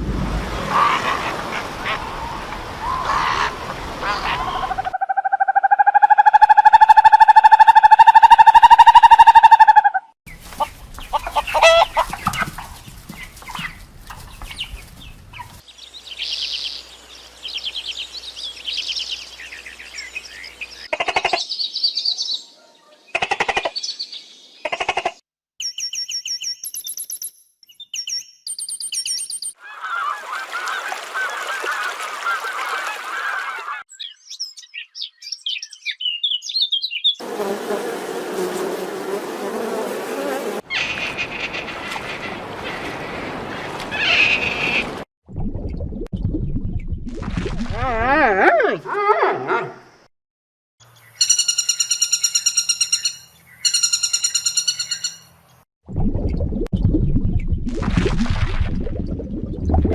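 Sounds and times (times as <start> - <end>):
bird calls: 0.6 - 22.5, 50.8 - 55.6
honking goose-like calls: 0.7 - 2.1, 2.8 - 4.8, 11.3 - 12.1.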